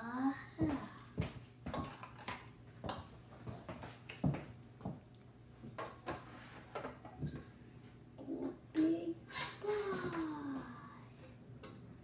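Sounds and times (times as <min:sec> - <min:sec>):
faint steady hum: 0:00.0 - 0:12.0
kitchenware knocks and clicks: 0:01.7 - 0:03.1.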